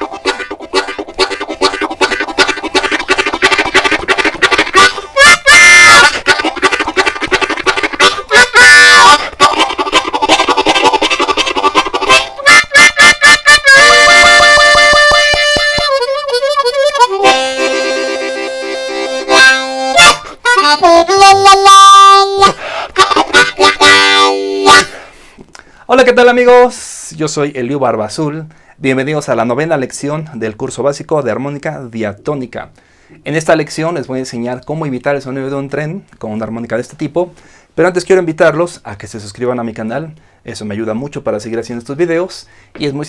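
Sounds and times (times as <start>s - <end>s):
harmonica chugging train rhythm: 0.0s - 25.1s
harmonica whistle chords: 0.0s - 25.2s.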